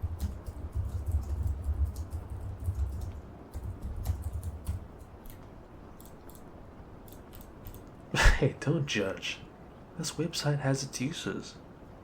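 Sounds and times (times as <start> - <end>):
typing on computer keyboard: 0.0 - 6.5, 7.1 - 7.9.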